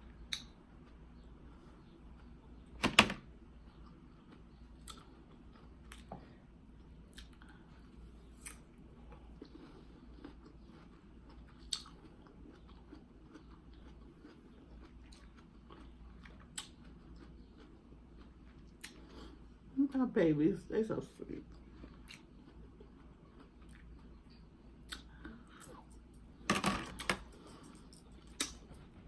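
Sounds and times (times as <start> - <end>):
person chewing: 3.7 - 6.1, 7.0 - 19.4, 21.5 - 26.0, 28.2 - 28.6
wet mouth clicks: 24.9 - 25.2.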